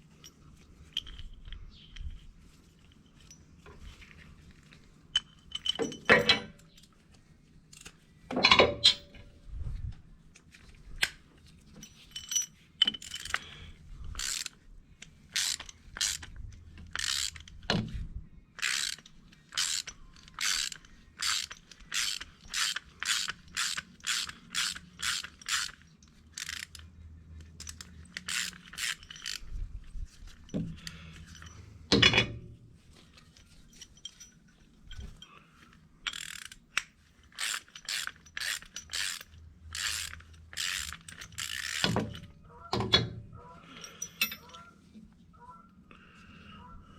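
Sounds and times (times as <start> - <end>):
hand ratchet strokes: 12.2 - 17.7, 18.6 - 31.7, 36.0 - 42.3.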